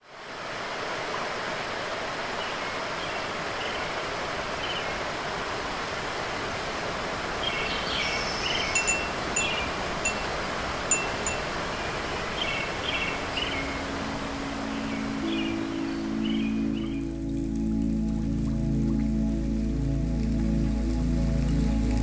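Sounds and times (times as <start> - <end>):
wind chimes tinkling: 8.8 - 11.6.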